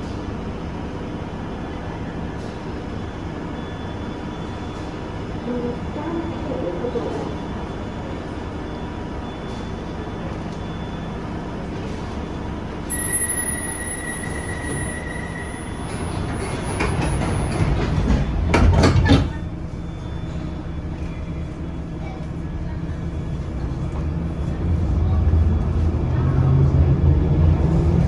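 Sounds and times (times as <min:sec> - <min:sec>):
train rumble on rails: 0:00.0 - 0:28.0
high wheel squeal: 0:12.9 - 0:17.8
rail clatter: 0:13.8 - 0:19.5.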